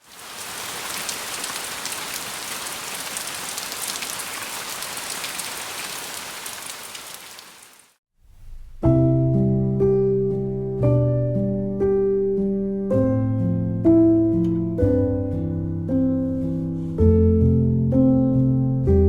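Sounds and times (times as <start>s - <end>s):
steady rain falling: 0.0s - 8.0s.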